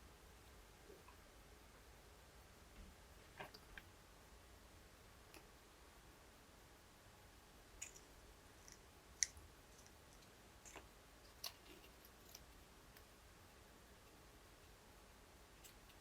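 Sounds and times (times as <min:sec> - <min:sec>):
small objects clicking and tapping: 0:07.8 - 0:13.1.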